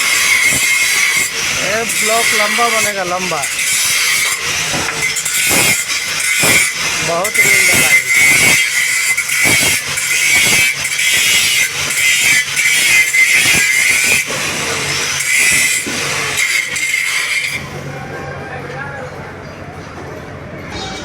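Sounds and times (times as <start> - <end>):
welding arc hissing and crackling: 0.0 - 17.3.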